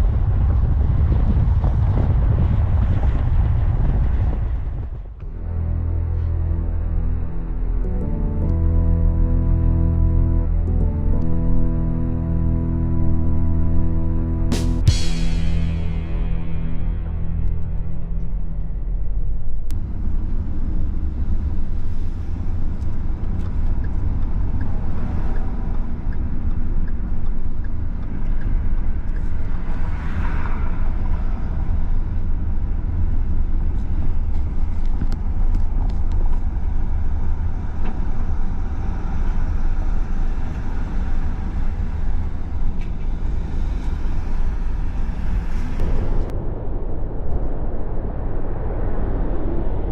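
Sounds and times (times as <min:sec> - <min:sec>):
car road and engine rumble: 0:00.0 - 0:46.9
background music: 0:05.2 - 0:19.7.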